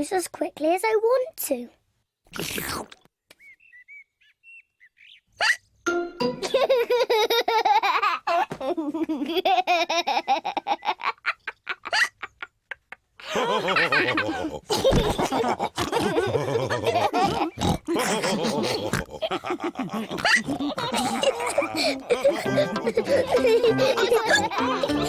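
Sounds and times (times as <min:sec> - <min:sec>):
cartoon pigs laughing: 0:06.4 - 0:25.0.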